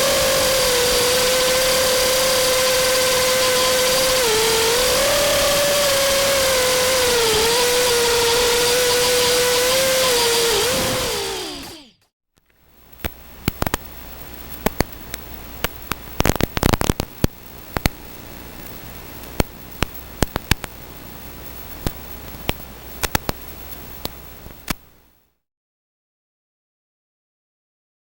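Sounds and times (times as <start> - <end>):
drone motors whining down: 0.0 - 12.1
sharp clicks and ticks: 11.0 - 20.8, 21.8 - 24.8.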